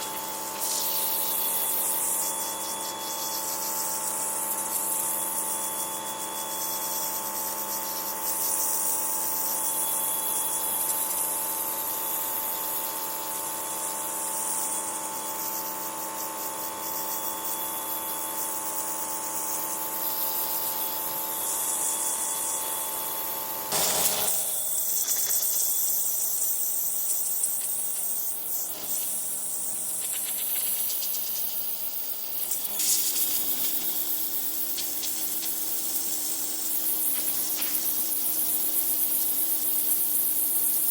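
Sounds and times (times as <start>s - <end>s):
pressure washer jet hissing: 0.0s - 2.2s, 23.7s - 26.0s, 30.0s - 40.0s
pressure washer motor humming: 0.0s - 2.7s, 19.7s - 25.7s.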